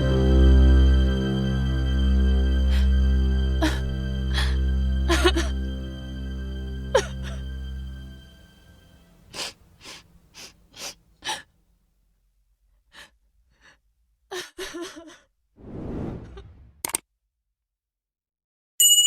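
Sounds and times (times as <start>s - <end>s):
background music: 0.0s - 9.8s.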